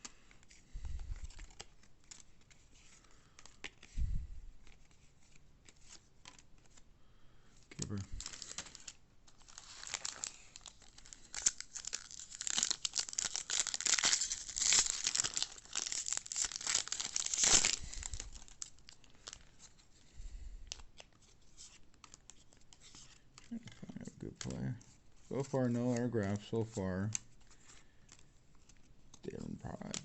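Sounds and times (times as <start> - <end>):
wrapper tearing and crinkling: 7.8 - 19.8.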